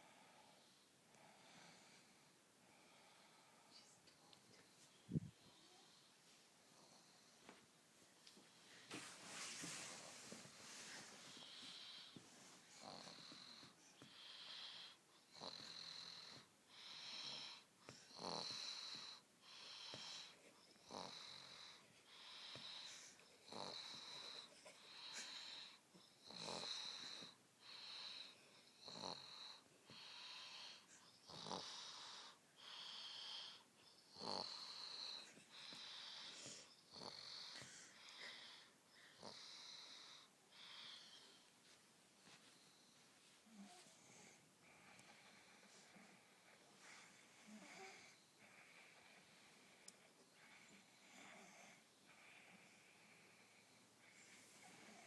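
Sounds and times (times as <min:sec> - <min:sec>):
wheezy snoring: 0:11.3 - 0:41.3, 0:47.0 - 0:48.2.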